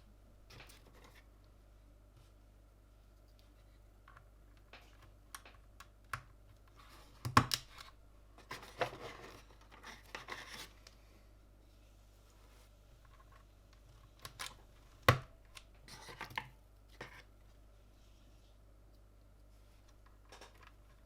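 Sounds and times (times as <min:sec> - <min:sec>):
rustling and scraping: 0:00.5 - 0:01.4, 0:06.7 - 0:10.9.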